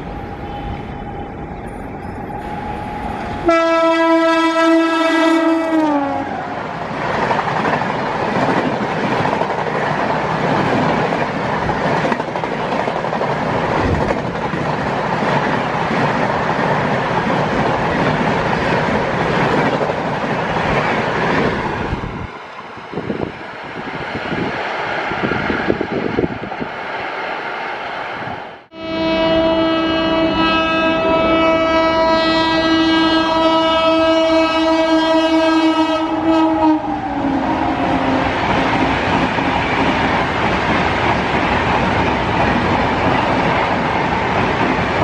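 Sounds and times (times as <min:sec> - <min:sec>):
train wheels rumbling on rails: 0:00.0 - 0:28.7, 0:30.3 - 0:45.0
train horn blast: 0:02.4 - 0:06.4, 0:28.7 - 0:38.9.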